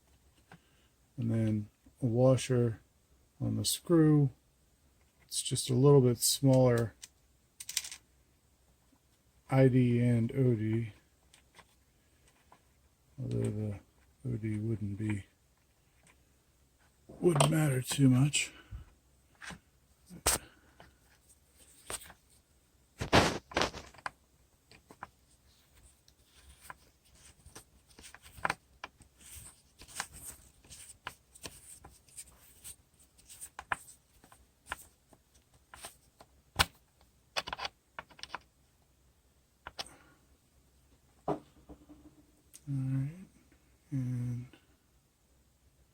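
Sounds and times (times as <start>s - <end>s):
small parts clattering: 6.8s - 8.0s
small parts clicking: 6.8s - 8.0s.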